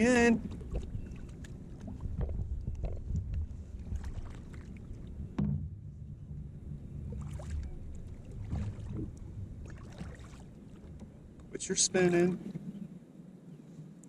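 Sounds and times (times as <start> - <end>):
steady low rumble: 0.0 - 12.9
knocks against kayak hull: 5.4 - 5.8.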